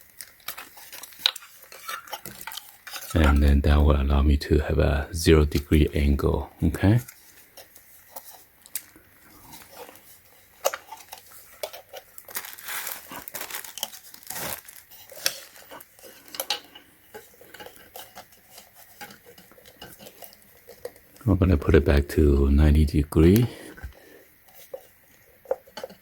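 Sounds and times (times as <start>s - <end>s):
plastic parts clicking and knocking: 0.0s - 3.5s.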